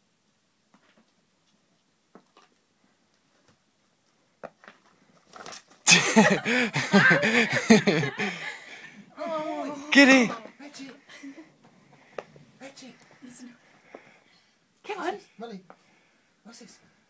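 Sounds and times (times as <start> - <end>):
loud laughter bursts: 5.9 - 8.8.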